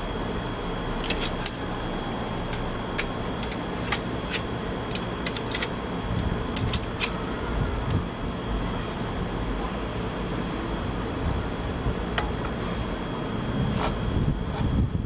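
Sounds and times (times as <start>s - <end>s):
background hum: 0.0s - 15.0s
faint high whine: 0.0s - 15.0s
small metal parts clinking: 2.5s - 7.1s.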